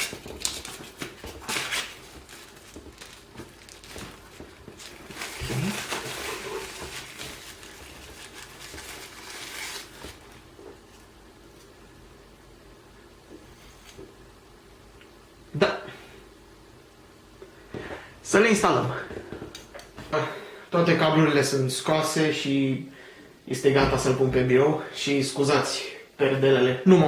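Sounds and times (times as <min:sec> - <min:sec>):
crinkly packaging rustle: 0:00.0 - 0:11.8.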